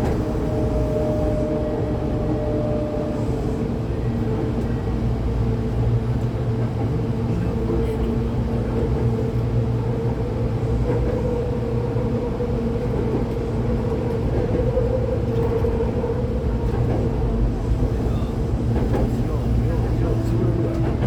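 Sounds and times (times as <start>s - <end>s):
train wheels rumbling: 0.0s - 21.0s.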